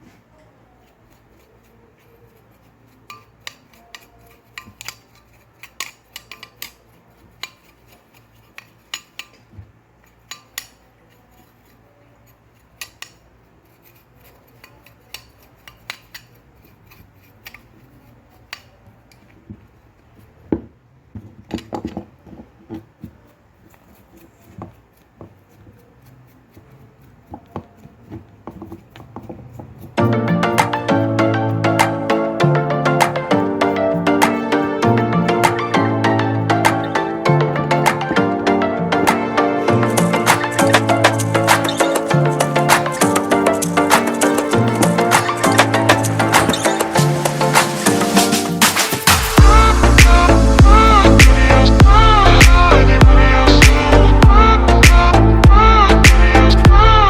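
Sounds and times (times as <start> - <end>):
small metal and plastic parts clicking: 0.8 - 19.4.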